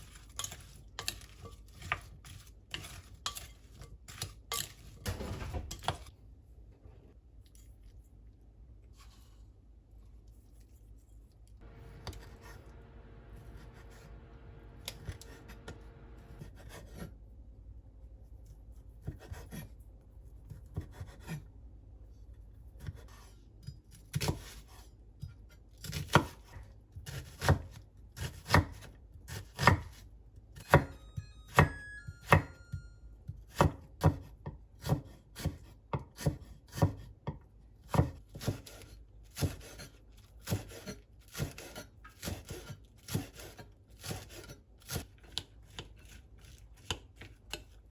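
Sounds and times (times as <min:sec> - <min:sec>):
knife chopping on cutting board: 0:19.0 - 0:19.7, 0:20.5 - 0:21.4, 0:24.1 - 0:24.8, 0:25.8 - 0:30.0, 0:33.5 - 0:46.2.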